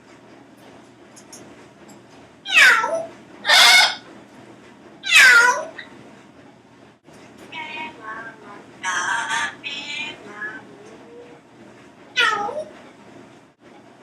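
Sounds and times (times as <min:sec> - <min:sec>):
parrot imitating cat meow: 0:02.5 - 0:04.0, 0:05.0 - 0:05.8, 0:08.8 - 0:10.7, 0:12.2 - 0:12.7.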